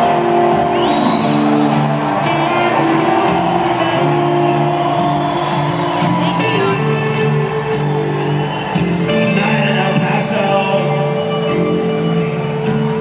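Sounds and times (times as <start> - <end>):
drums: 0.0 - 13.0
electric guitar chords: 0.0 - 13.0
high whistle: 0.7 - 2.3.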